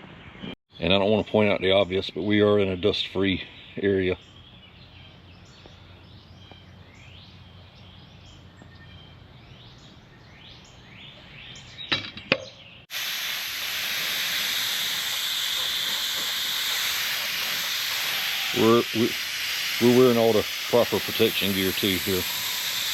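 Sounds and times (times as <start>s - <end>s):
faint bird chirps: 3.2s - 12.9s
spray paint hissing: 12.9s - 22.9s.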